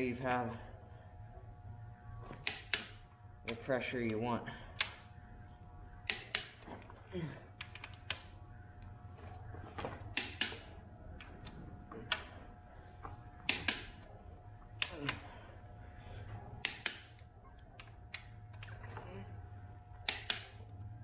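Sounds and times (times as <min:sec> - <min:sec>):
faint steady hum: 0:00.0 - 0:21.0
torque wrench clicking: 0:02.4 - 0:03.0, 0:06.0 - 0:06.5, 0:10.2 - 0:10.7, 0:13.5 - 0:14.0, 0:16.6 - 0:17.2, 0:20.0 - 0:20.6.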